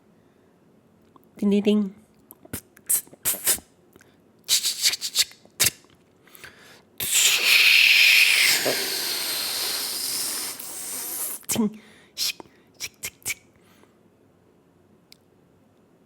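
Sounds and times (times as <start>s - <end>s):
mouth clicks and puffs: 2.4s - 3.6s, 4.5s - 5.8s, 7.0s - 11.5s, 12.2s - 13.4s
long loud mouth hiss: 2.9s - 3.6s, 4.5s - 5.7s, 7.0s - 11.6s.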